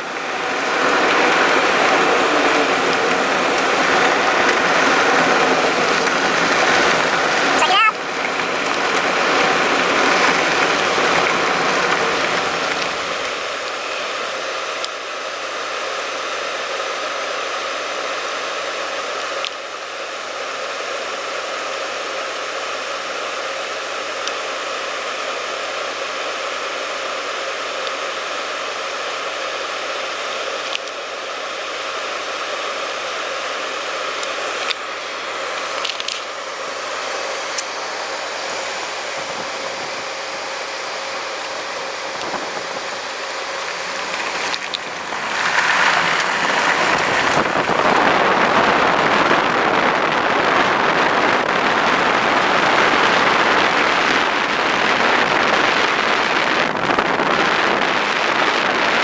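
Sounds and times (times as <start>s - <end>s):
storm rain: 0.0s - 14.1s, 41.5s - 59.0s
wind: 0.0s - 59.0s.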